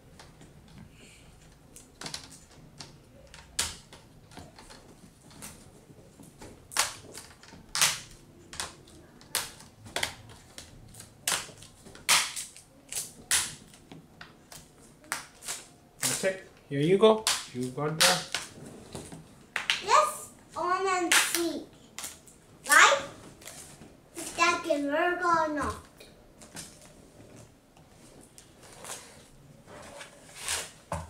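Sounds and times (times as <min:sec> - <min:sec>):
plastic laptop parts clicking: 0:01.4 - 0:05.6.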